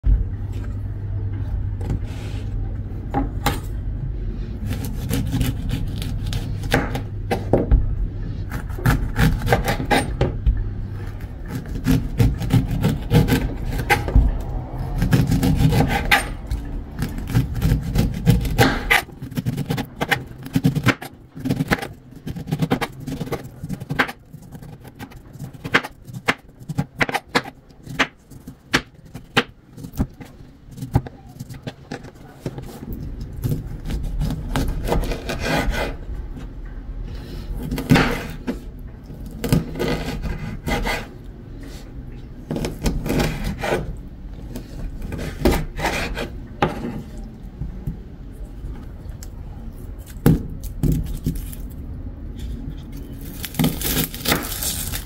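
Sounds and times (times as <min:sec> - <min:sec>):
steady low hum: 0:00.0 - 0:55.0
scraping and rasping: 0:10.9 - 0:36.5, 0:39.2 - 0:41.8, 0:42.5 - 0:47.2.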